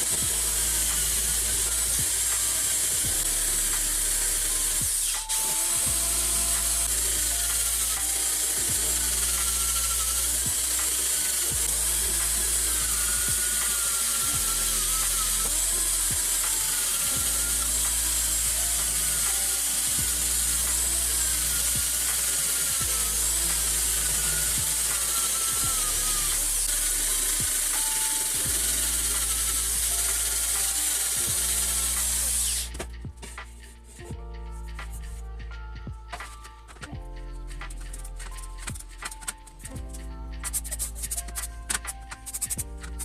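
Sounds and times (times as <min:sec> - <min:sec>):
power tool scouring metal: 0:00.0 - 0:32.8
background music: 0:00.0 - 0:43.0.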